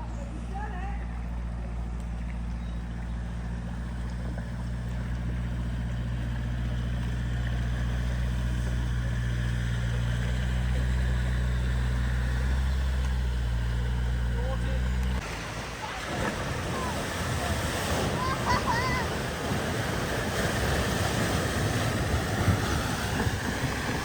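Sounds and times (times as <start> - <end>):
vehicle engine humming: 0.0 - 24.0
faint wash of noise: 15.2 - 24.0.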